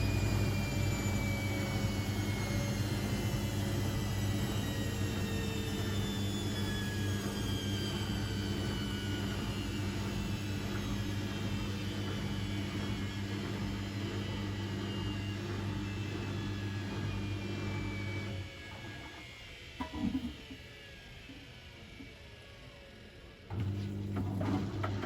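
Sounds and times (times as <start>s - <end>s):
motor whine falling in pitch: 0.0s - 19.0s
washing machine running down: 0.0s - 21.5s, 23.5s - 25.0s.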